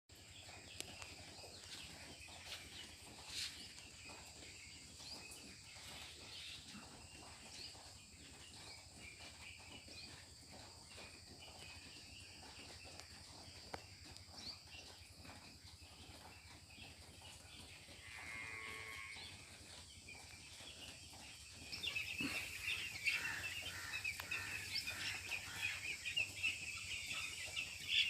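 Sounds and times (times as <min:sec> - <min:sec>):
chickens chirping: 0:00.1 - 0:28.0.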